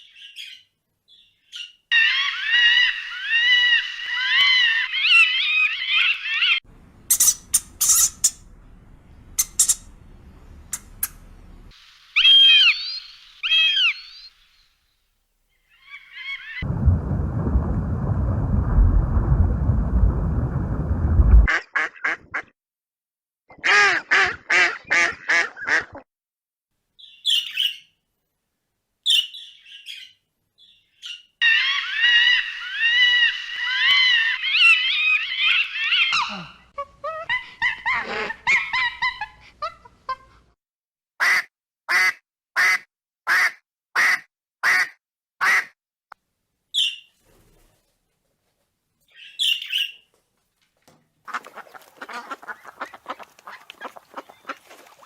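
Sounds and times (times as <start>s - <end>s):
steady rushing noise: 16.7s - 21.5s
ducks quacking: 23.5s - 26.0s, 51.3s - 55.0s.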